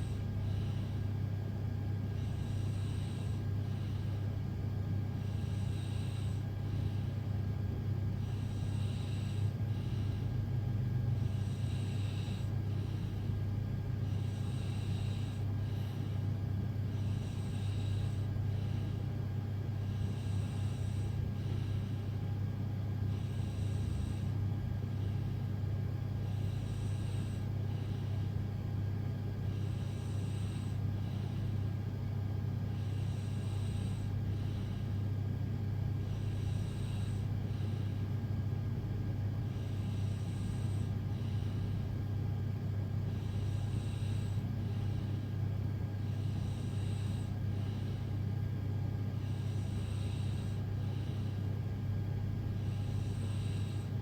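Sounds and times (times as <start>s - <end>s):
steady low hum: 0.0s - 54.0s
woman snoring lightly: 2.1s - 4.2s, 5.2s - 7.1s, 8.1s - 22.2s, 23.0s - 25.4s, 26.1s - 28.2s, 29.4s - 31.6s, 32.7s - 35.1s, 36.0s - 38.1s, 39.5s - 42.0s, 43.1s - 45.3s, 46.0s - 48.2s, 49.1s - 51.5s, 52.6s - 54.0s.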